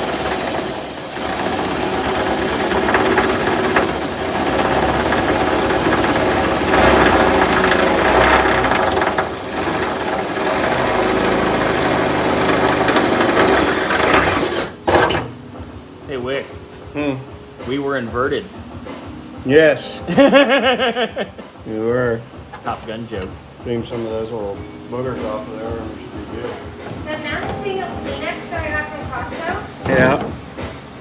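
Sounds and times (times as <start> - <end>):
electric drill grinding through metal: 0.0 - 15.4.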